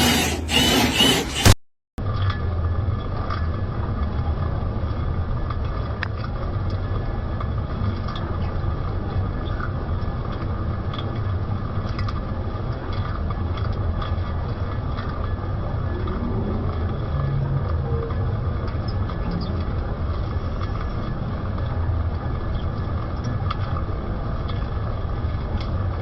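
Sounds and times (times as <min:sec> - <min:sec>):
lathe running with low hum: 0:00.0 - 0:01.6.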